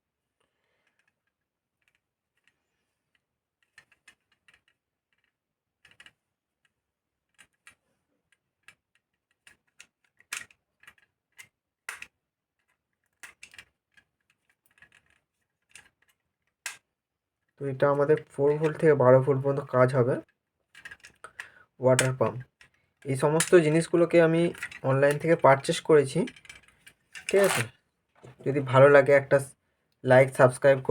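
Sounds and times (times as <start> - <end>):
faint irregular clicks: 0.4 - 18.9, 20.2 - 23.9
knife scraping wire insulation: 27.2 - 27.7.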